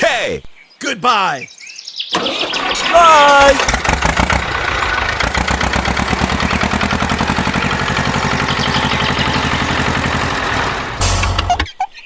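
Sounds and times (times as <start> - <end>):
vehicle engine chugging: 2.2 - 11.8.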